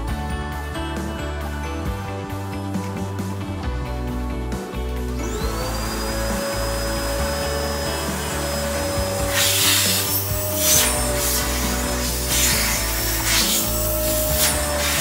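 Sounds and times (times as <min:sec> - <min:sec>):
vacuum cleaner motor whine: 0:05.2 - 0:15.0
vacuum nozzle rubbing on surface: 0:05.4 - 0:15.0.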